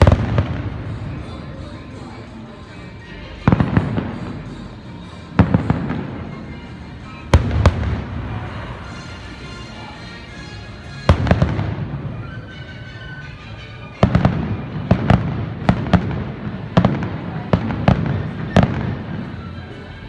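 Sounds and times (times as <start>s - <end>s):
fireworks bangs: 0.0s - 1.6s, 5.4s - 12.6s, 14.0s - 19.4s.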